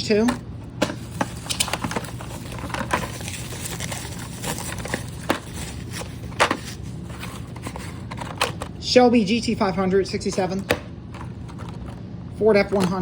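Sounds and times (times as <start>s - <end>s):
steady low hum: 0.0s - 13.0s
clicks and taps of packaging: 0.3s - 6.7s
plastic blister packs crinkling: 0.8s - 8.8s.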